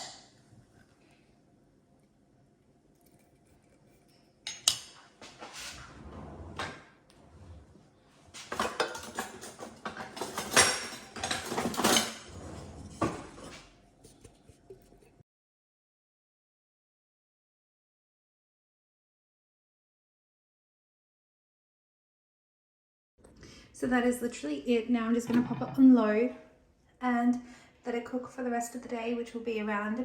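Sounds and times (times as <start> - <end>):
utensils clinking and scraping pot: 3.0 - 5.0, 8.4 - 15.2, 25.2 - 25.9.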